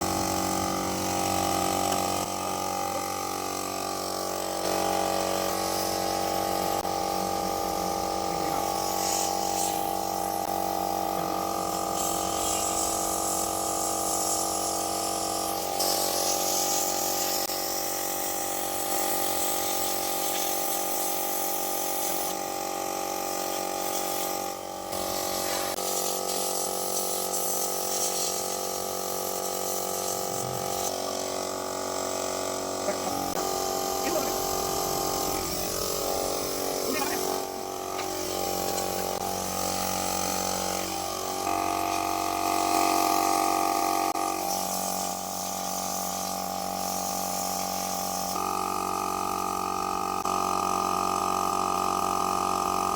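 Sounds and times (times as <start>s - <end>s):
electric tool motor whine: 30.4s - 45.3s.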